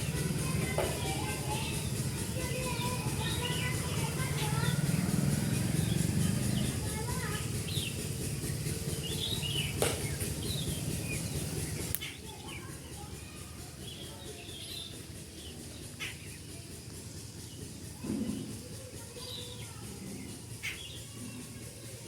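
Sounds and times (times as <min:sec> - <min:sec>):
low background rumble: 0:00.0 - 0:21.6
small birds chirping: 0:00.0 - 0:22.0
sharp clicks: 0:11.8 - 0:12.2.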